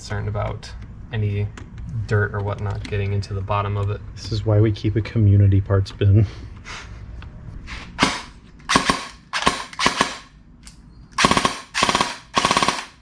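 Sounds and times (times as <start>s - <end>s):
airsoft gun full-auto bursts: 8.0s - 10.3s, 11.2s - 13.0s.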